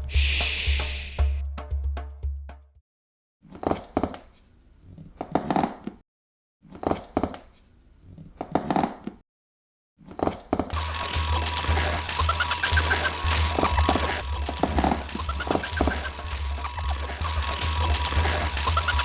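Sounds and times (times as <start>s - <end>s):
music with a steady beat: 0.0s - 2.8s, 10.8s - 19.0s.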